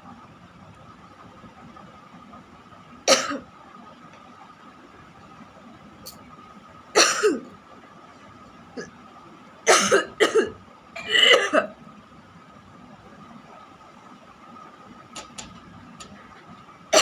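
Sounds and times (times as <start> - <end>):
person coughing harshly: 3.1 - 3.4, 7.0 - 7.5, 9.7 - 11.7.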